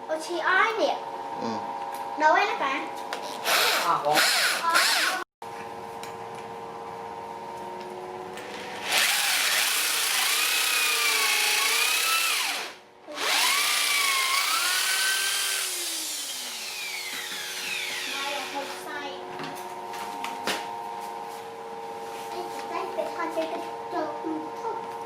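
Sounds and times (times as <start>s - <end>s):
electric power tool motor: 3.3s - 5.3s, 8.4s - 18.9s.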